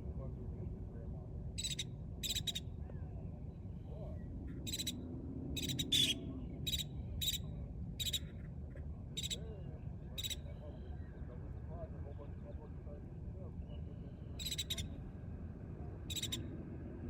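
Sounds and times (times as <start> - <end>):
low background rumble: 0.0 - 17.0
birds chirping: 13.6 - 14.9.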